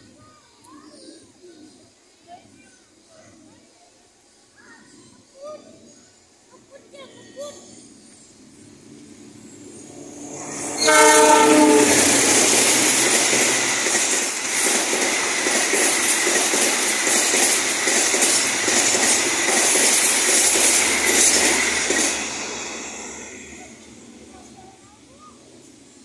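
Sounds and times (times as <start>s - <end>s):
train passing with wheel clatter: 5.8s - 26.0s
train horn blast: 10.3s - 12.9s.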